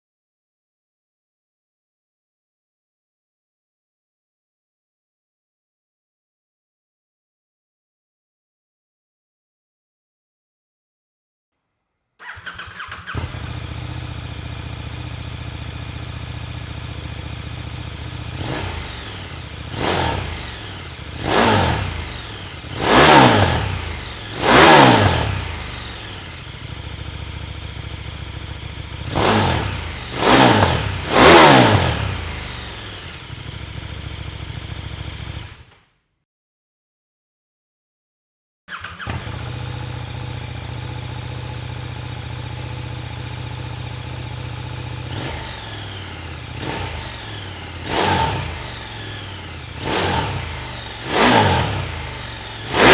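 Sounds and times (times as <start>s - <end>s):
motorcycle engine revving: 12.2s - 35.8s, 38.7s - 52.9s.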